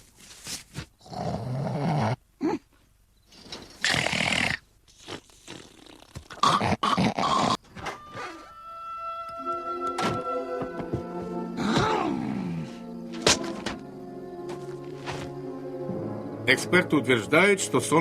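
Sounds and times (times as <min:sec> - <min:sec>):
cartoon snoring: 0:03.8 - 0:07.6.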